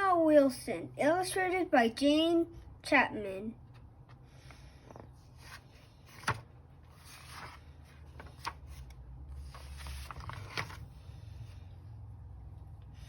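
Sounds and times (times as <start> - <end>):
low steady hum: 0.0 - 13.0
book pages rustling: 3.6 - 11.6.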